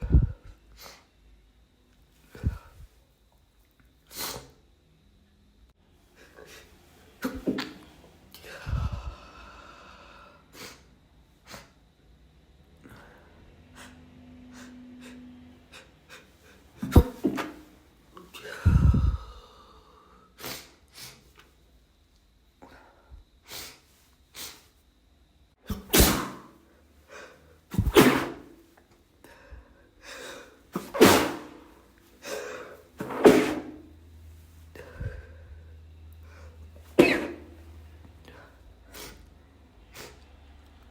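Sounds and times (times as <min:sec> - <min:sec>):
quick catching breaths: 0:02.3 - 0:03.0, 0:18.3 - 0:21.3, 0:34.7 - 0:37.7
person sneezing muffled: 0:04.1 - 0:04.6, 0:06.2 - 0:09.2, 0:13.8 - 0:19.4, 0:25.6 - 0:26.6, 0:27.2 - 0:28.6, 0:30.1 - 0:33.9, 0:36.9 - 0:37.6, 0:38.3 - 0:39.3.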